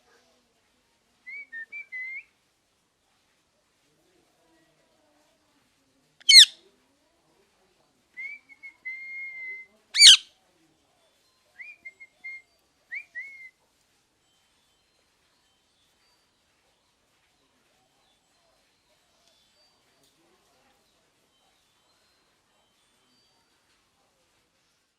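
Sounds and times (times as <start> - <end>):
parrot screeching: 6.3 - 6.5, 10.0 - 10.2
parrot whistling: 6.3 - 6.5, 10.0 - 10.2.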